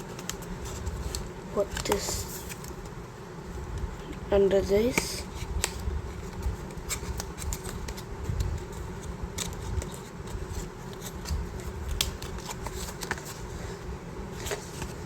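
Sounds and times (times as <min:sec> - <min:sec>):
steady low hum: 0:00.0 - 0:15.0
packaging clicks and rustles: 0:05.6 - 0:13.5.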